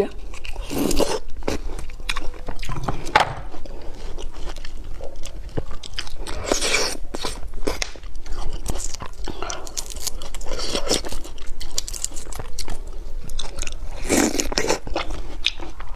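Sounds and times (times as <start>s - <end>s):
wet chewing: 3.6s - 15.9s.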